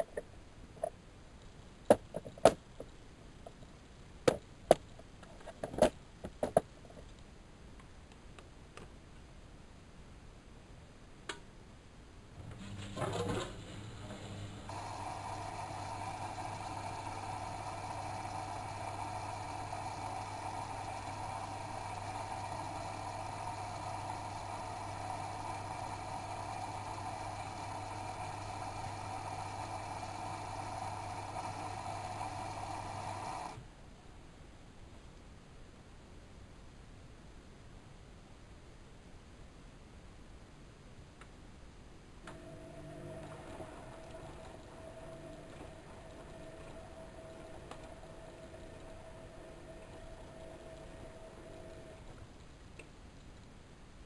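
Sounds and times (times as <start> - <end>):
washing machine running: 12.4 - 33.6, 42.3 - 52.1.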